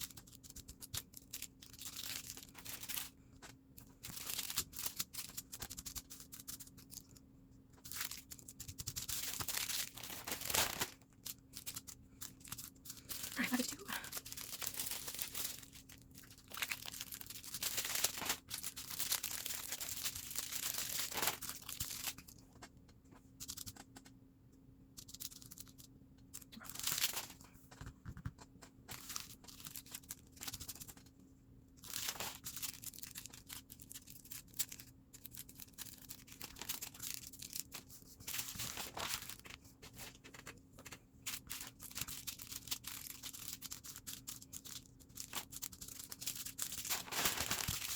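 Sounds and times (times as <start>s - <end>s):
plastic bags crinkling: 1.1s - 3.2s, 3.9s - 5.9s, 7.9s - 22.3s, 26.5s - 27.5s, 31.8s - 40.5s, 41.3s - 47.9s.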